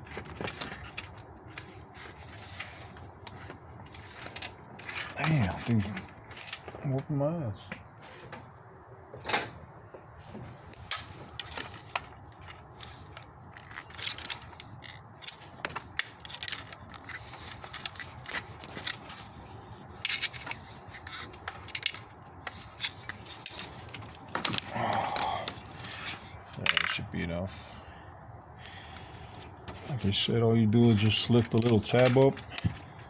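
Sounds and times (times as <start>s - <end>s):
hand tools clicking and scraping: 0.0s - 7.0s, 10.7s - 27.0s, 30.8s - 33.0s.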